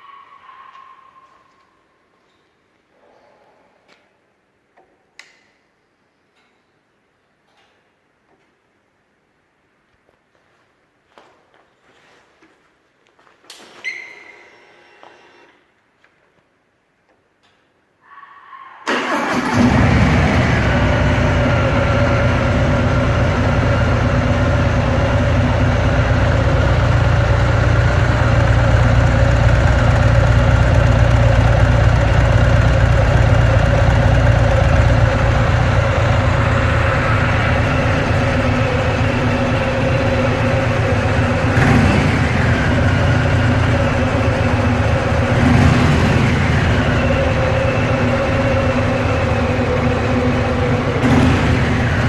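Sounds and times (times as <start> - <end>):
motorcycle engine idling: 18.9 - 52.0.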